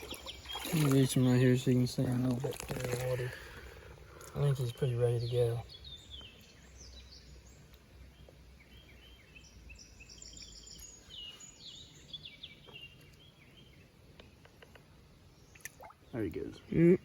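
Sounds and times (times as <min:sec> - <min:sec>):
songbirds chirping and singing: 0:00.0 - 0:17.0.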